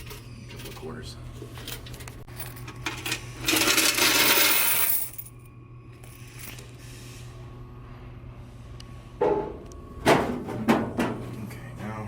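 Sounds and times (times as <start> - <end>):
steady low hum: 0.0 - 12.0
coins rattling and spilling: 2.4 - 5.3.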